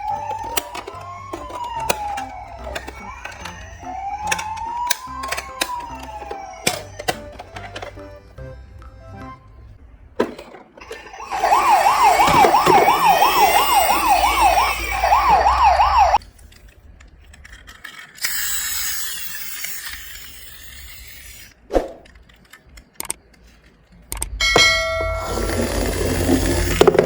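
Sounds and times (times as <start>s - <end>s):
siren yelping: 0.0s - 7.6s, 10.9s - 16.2s.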